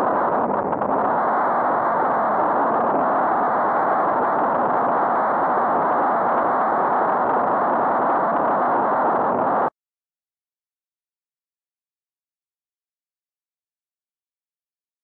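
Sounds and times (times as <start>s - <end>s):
wind rushing on microphone: 0.0s - 9.7s.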